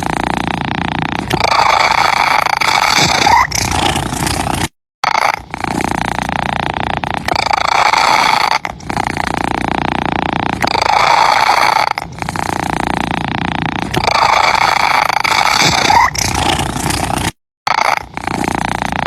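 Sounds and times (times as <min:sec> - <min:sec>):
cat purring: 0:00.0 - 0:19.0.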